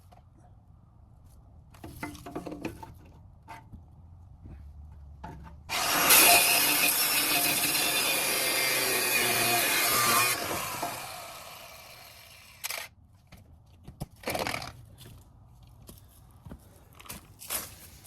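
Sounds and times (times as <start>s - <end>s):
angle grinder cutting metal pipe: 5.7s - 12.8s.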